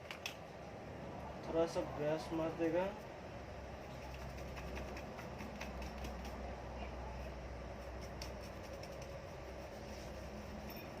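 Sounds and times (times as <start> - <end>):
steady low hum: 0.0 - 11.0
brush scrubbing circuit board: 7.8 - 11.0.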